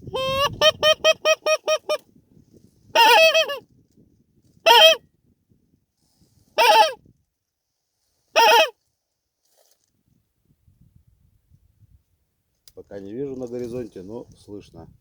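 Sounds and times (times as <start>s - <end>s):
goose honking: 0.1s - 2.0s, 3.0s - 3.6s, 4.7s - 5.0s, 6.6s - 7.0s, 8.4s - 8.7s.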